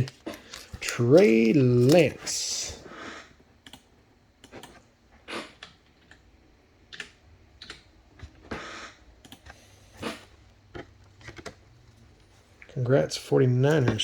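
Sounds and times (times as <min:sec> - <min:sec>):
cards clicking and tapping: 0:00.0 - 0:02.3.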